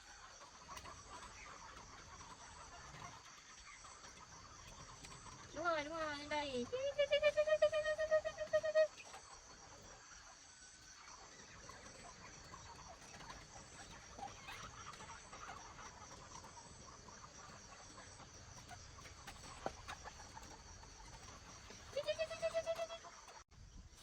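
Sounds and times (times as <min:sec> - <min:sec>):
insects trilling: 0:00.0 - 0:24.0.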